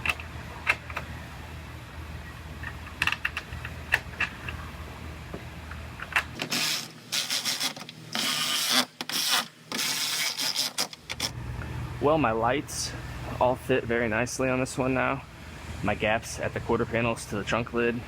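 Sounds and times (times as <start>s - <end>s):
clicks and knocks of parts: 0.0s - 1.1s, 2.6s - 4.6s, 5.7s - 8.0s.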